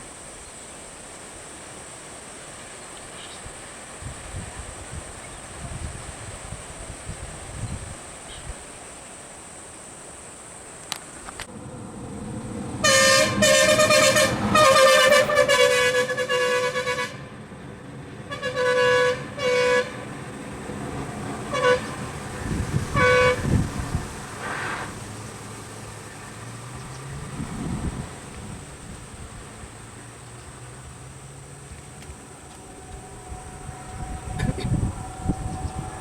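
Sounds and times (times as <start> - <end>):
vehicle engine running: 11.4 - 36.0
vehicle horn honking: 12.8 - 17.3, 18.3 - 20.1, 21.5 - 22.1, 22.8 - 23.7, 32.6 - 36.0.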